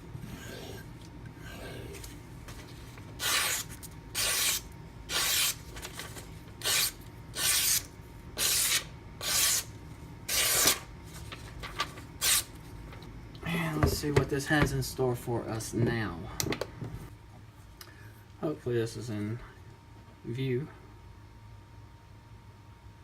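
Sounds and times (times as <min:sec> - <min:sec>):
knife rubbing on strop: 0:03.2 - 0:05.6, 0:06.6 - 0:09.7, 0:10.3 - 0:10.8.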